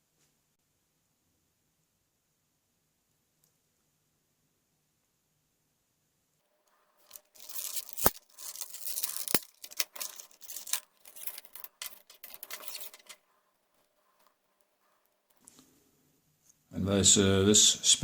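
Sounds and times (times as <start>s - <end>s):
bicycle parts rattling and scraping: 6.8s - 15.4s.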